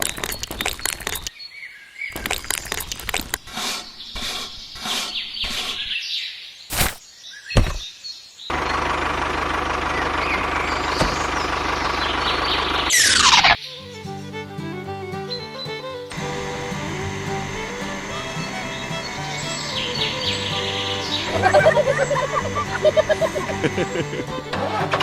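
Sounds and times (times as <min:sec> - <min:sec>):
birds chirping: 0:00.0 - 0:08.8, 0:09.9 - 0:14.1, 0:15.3 - 0:25.0
small motor humming: 0:16.1 - 0:24.6.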